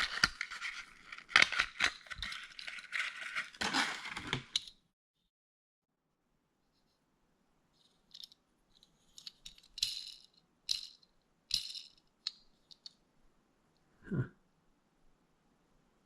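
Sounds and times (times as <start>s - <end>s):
toy truck and packaging rattling: 0.0s - 4.8s, 7.8s - 12.9s.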